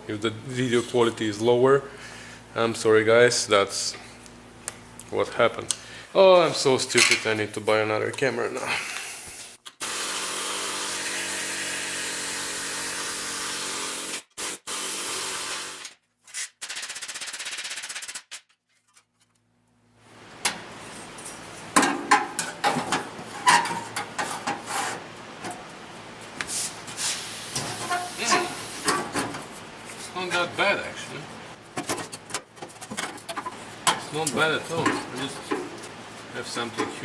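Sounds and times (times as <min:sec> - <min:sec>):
power tool running: 0:09.8 - 0:15.9.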